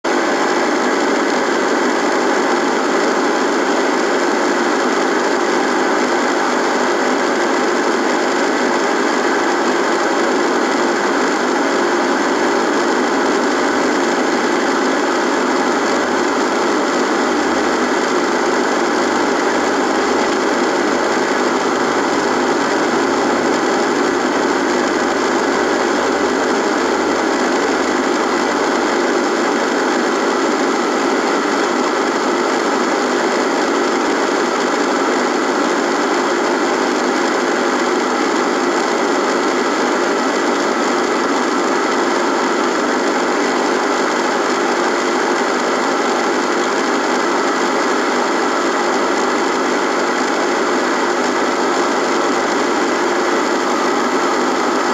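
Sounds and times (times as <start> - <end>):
radio buzz and static hiss: 0.1 - 54.9.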